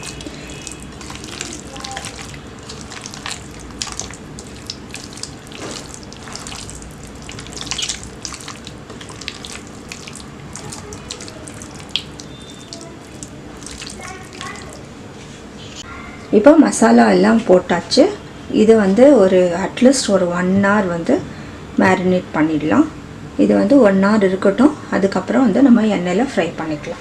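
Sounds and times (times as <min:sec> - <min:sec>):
squelching of wet meat mixed by hand: 0:00.0 - 0:15.4.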